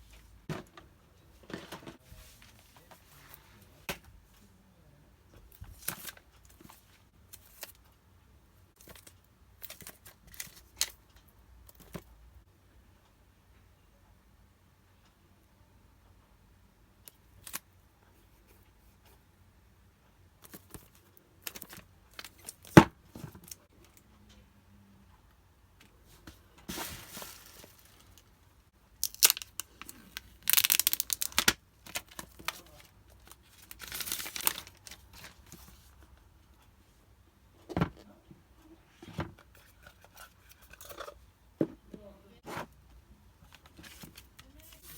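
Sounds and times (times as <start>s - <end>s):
plastic packaging tearing: 29.0s - 35.3s.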